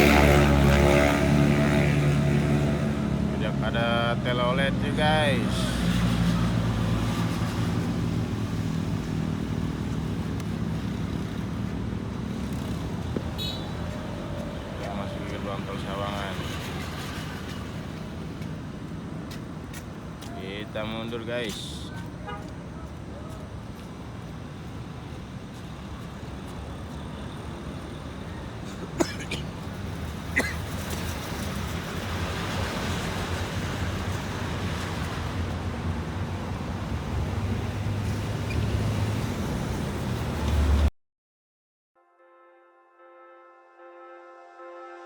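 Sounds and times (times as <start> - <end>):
bus diesel engine passing: 0.0 - 21.0, 22.0 - 40.9
road traffic: 0.0 - 40.9.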